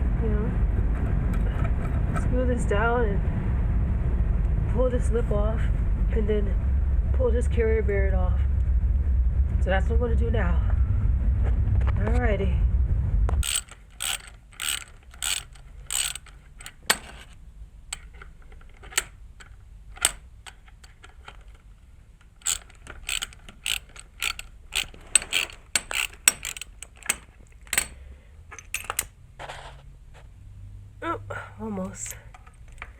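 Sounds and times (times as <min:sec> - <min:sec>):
hand ratchet clicking: 0:13.4 - 0:29.1.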